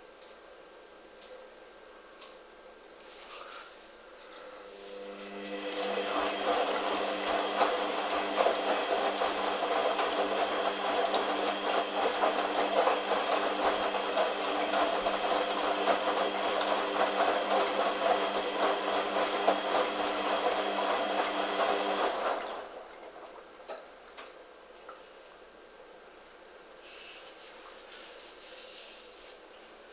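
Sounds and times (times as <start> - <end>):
washing machine running: 4.7 - 23.7.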